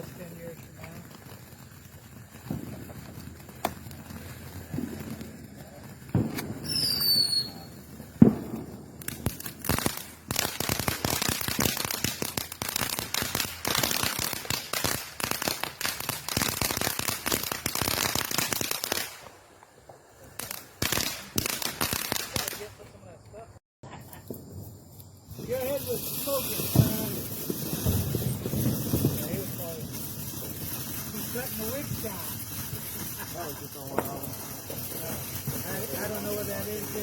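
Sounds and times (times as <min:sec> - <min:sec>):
scattered firework pops: 0:00.0 - 0:23.4, 0:24.0 - 0:37.0
dense firework crackling: 0:00.0 - 0:37.0
loud firework bang: 0:02.4 - 0:10.2, 0:25.3 - 0:37.0
firework launch whistles: 0:04.5 - 0:12.6, 0:24.9 - 0:37.0.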